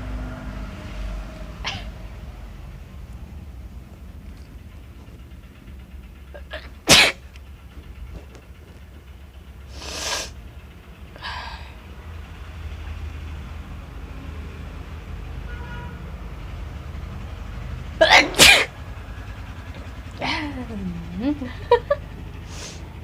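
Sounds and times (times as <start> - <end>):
steady low hum: 0.0 - 15.0, 16.2 - 23.0
woman sneezing: 6.9 - 7.2, 18.0 - 18.7
sharp noisy breath: 9.7 - 10.4, 22.4 - 23.0.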